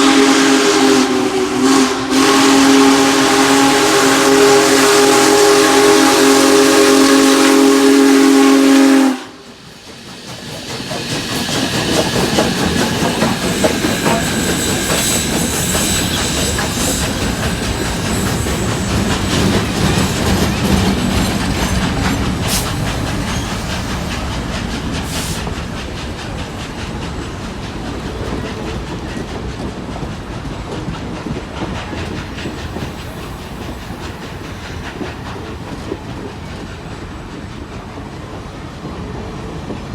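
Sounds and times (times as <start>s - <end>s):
steam locomotive chime whistle: 0.0s - 9.5s, 12.1s - 21.8s
train rumbling past: 0.0s - 39.9s
wheels clacking on rails: 2.9s - 39.9s.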